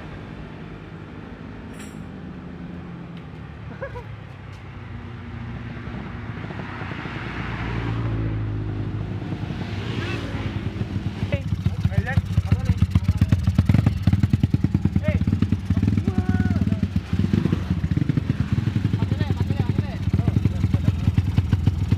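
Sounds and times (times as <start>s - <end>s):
motorcycle engine running: 10.0s - 21.9s.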